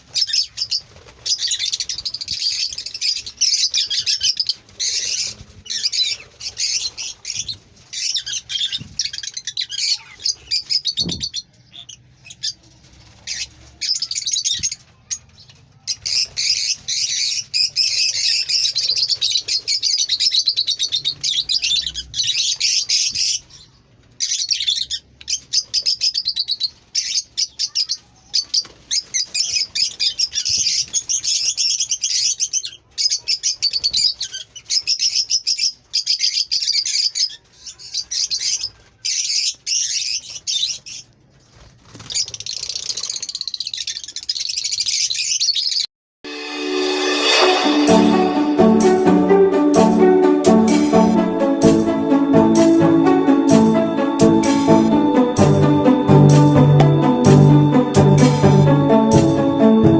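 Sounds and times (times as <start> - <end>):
parrots chirping and chattering: 0.1 - 41.1, 42.0 - 45.8.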